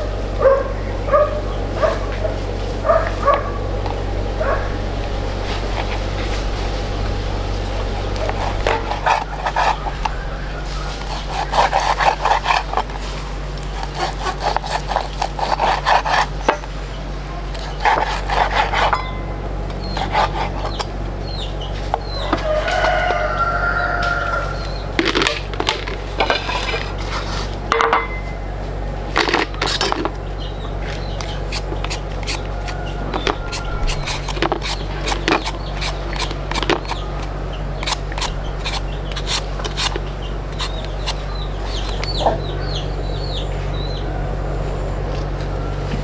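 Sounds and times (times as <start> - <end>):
rooster crowing: 0.0 - 12.5, 22.0 - 25.0, 32.2 - 38.0
steady low hum: 0.0 - 46.0.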